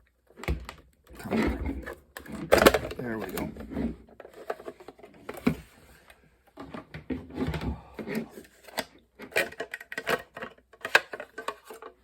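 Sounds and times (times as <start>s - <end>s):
plastic parts clicking: 0.4s - 3.6s, 8.0s - 12.0s.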